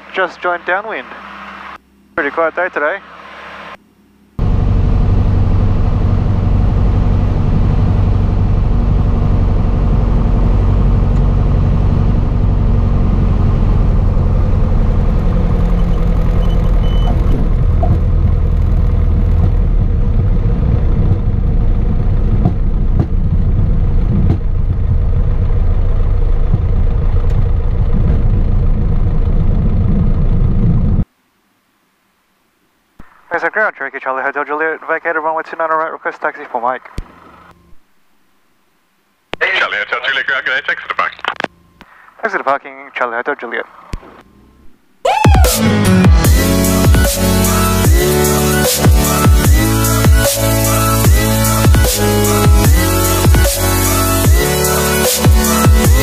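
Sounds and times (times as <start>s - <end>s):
propeller plane engine droning: 0.0s - 31.1s.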